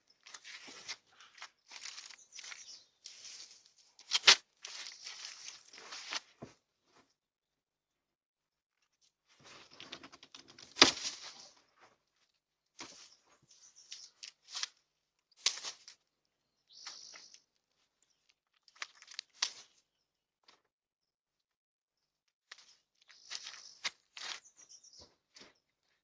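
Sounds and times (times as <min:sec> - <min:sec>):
branches rustling and snapping: 0:00.2 - 0:06.4, 0:09.4 - 0:11.6, 0:12.8 - 0:16.0, 0:18.1 - 0:19.8, 0:22.5 - 0:25.5.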